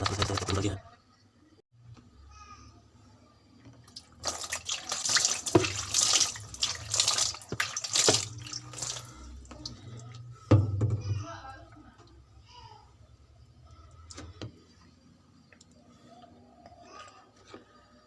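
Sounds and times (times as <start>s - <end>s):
tap water running and splashing: 3.7s - 10.6s.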